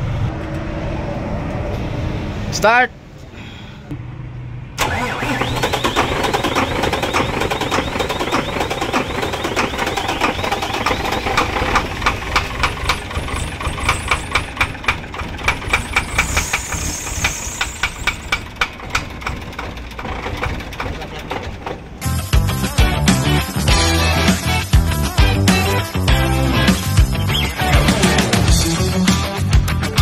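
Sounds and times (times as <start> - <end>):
diesel engine knocking: 4.8 - 22.5.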